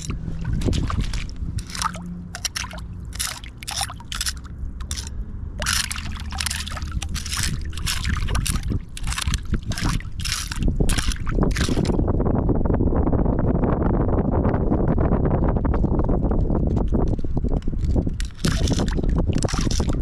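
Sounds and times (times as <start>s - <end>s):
creek water splashing: 0.0s - 12.0s, 18.2s - 20.0s
low rumble: 0.0s - 20.0s.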